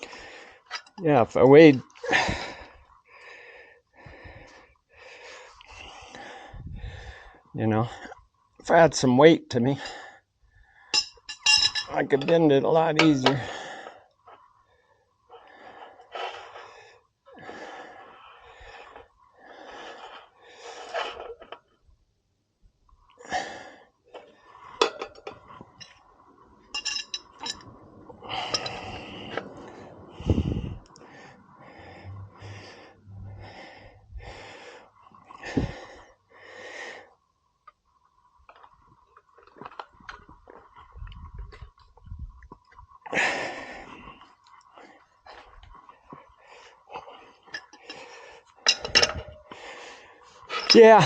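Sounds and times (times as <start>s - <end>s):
man breathing hard: 0.0s - 0.9s, 2.1s - 8.2s, 14.8s - 21.5s, 26.8s - 37.2s, 43.1s - 51.0s
thin steady tone: 26.6s - 34.3s.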